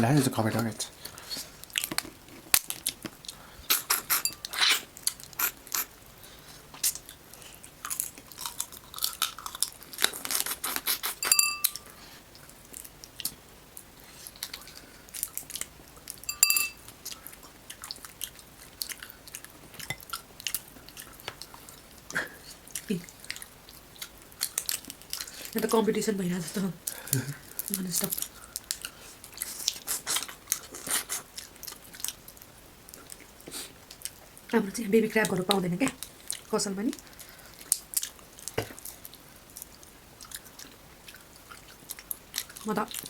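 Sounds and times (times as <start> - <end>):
chewing and crunching crab shells: 1.0 - 5.9, 6.6 - 25.6, 26.8 - 34.4, 36.0 - 43.0
short ringing clinks: 11.3 - 11.8, 16.3 - 16.8.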